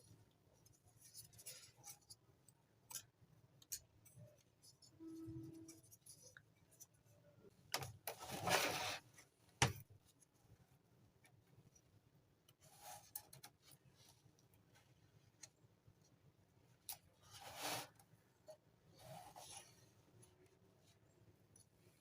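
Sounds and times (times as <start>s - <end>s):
rustling scrape: 8.1s - 9.1s, 17.2s - 18.0s.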